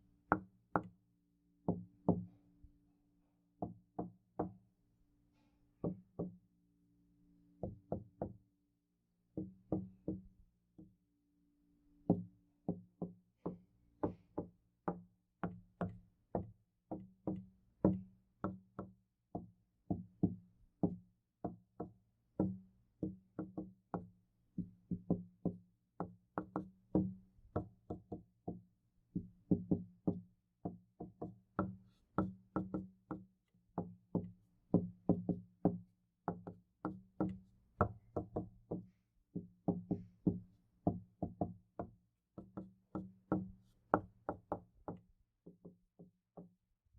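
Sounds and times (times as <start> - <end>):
knocking on a door: 9.4 - 10.9, 24.6 - 28.6, 29.2 - 46.6.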